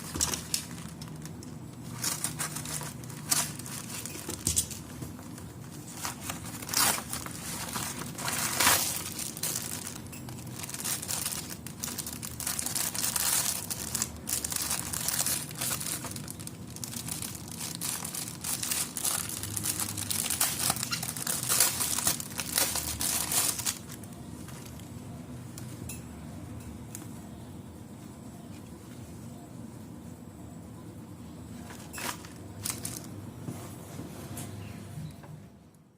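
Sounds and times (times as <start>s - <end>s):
plastic packaging crinkling: 0.0s - 24.9s, 31.7s - 33.2s.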